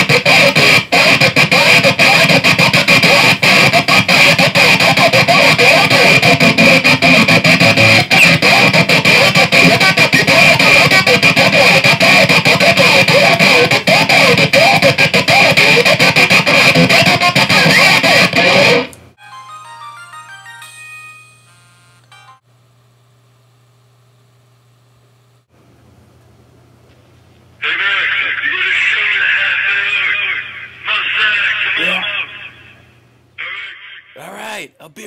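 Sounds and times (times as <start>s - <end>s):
distorted electric guitar: 0.0s - 18.9s.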